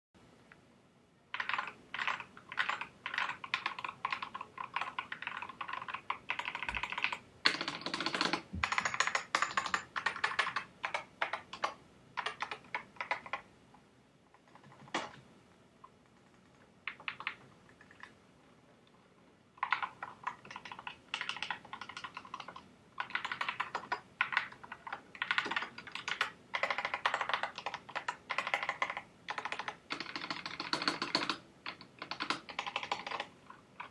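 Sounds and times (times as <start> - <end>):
keyboard typing clicks: 15.8 - 18.1, 19.6 - 33.9.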